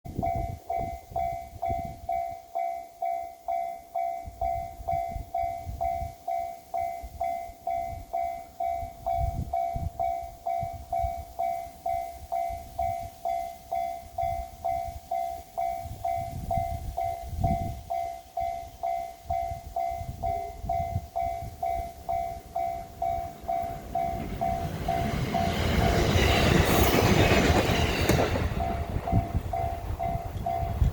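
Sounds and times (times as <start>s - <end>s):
level crossing bell ringing: 0.4s - 26.2s
electric train rushing past: 10.7s - 30.9s.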